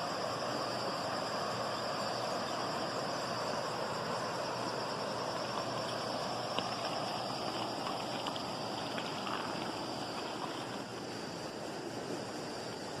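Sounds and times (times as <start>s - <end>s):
river water flowing over rocks: 0.0s - 13.0s.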